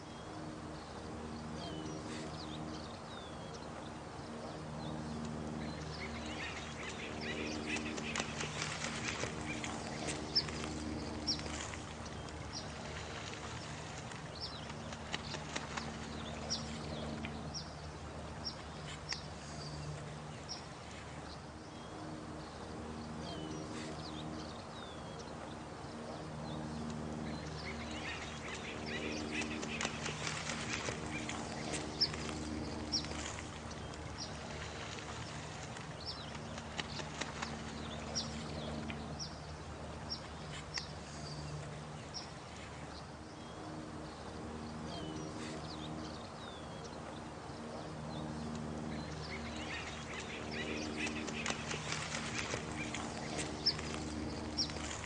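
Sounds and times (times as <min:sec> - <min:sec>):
running water: 0:05.0 - 0:55.0.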